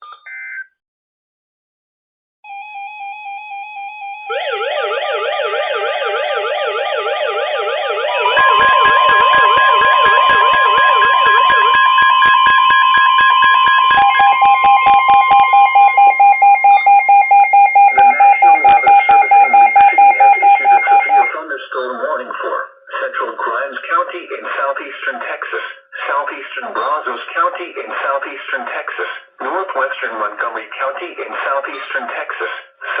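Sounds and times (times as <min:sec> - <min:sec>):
steady alarm tones: 0:02.5 - 0:21.4
warbling alarm tone: 0:02.5 - 0:21.4
fast repeating beep: 0:08.2 - 0:21.3.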